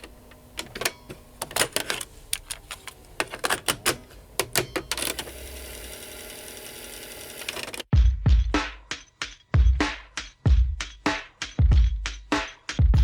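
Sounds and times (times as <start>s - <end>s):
whirring hum: 0.0s - 7.8s
mechanical clicks and clacks: 0.0s - 7.9s.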